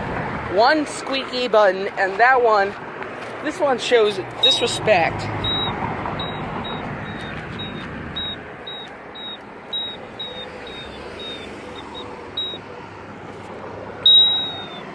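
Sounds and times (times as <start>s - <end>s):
steady traffic noise: 0.0s - 14.9s
short high locator beeps: 4.4s - 4.7s, 5.4s - 12.6s, 14.0s - 14.8s.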